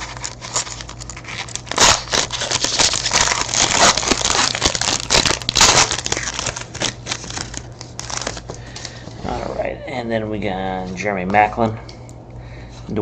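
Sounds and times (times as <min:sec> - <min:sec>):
foil wrapper crinkling: 0:00.0 - 0:09.0.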